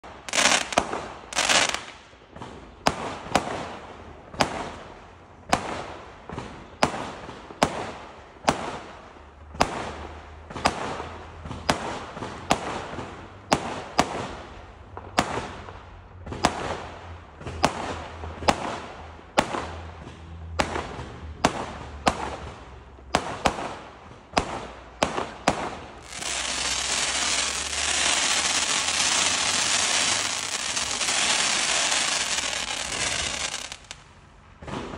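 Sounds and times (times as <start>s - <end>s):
fireworks bangs: 0.0s - 4.8s, 9.5s - 34.9s
loud continuous hiss: 25.8s - 34.5s.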